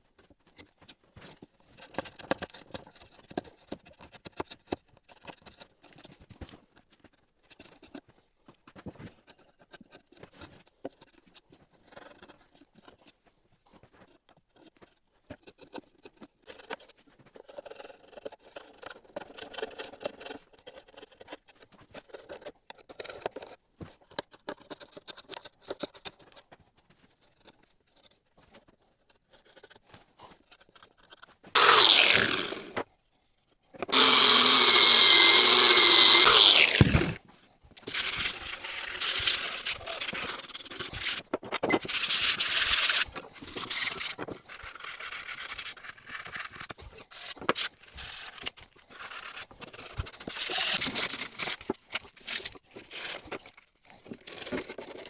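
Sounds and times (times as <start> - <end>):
clicks taps and scratches: 0.1 - 31.5
power tool starting: 31.6 - 32.8, 33.9 - 37.2, 37.9 - 40.4.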